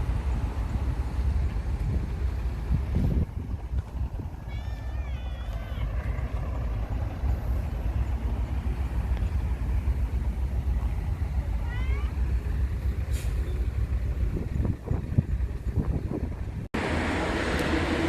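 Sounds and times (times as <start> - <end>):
steady low rumble: 0.0 - 17.8
cat meowing: 4.4 - 6.2.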